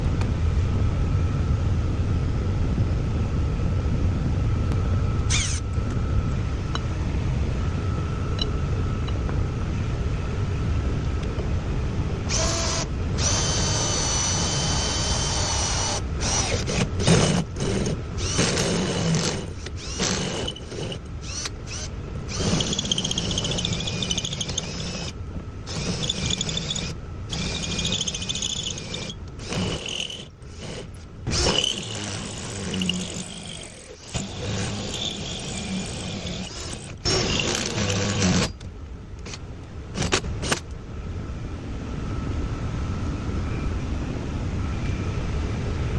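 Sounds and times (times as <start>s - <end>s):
power drill motor hum: 5.2s - 7.0s, 12.2s - 40.7s
hole saw squealing in metal: 12.3s - 38.6s.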